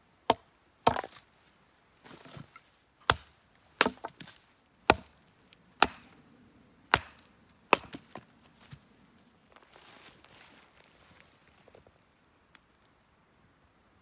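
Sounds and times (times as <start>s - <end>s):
sharp chopping blows: 5.8s - 6.2s, 6.9s - 8.0s.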